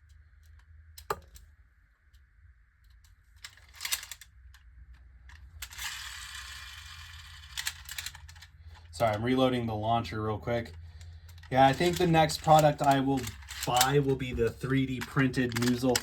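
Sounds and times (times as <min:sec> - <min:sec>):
plastic clicks and ratcheting: 0:11.2 - 0:16.0.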